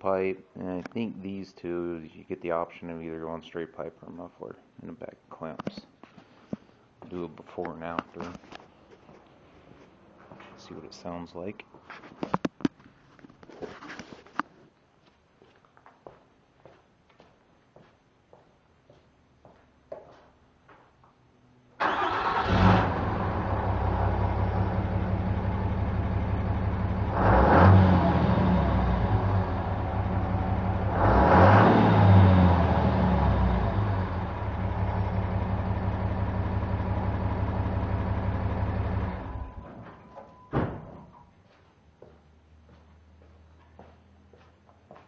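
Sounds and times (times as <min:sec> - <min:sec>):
diesel engine idling and revving: 0:21.9 - 0:39.7.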